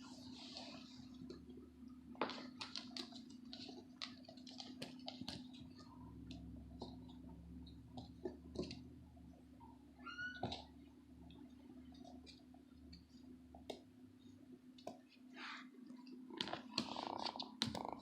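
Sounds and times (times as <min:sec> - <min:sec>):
small clicks and ticks: 0:02.3 - 0:08.8.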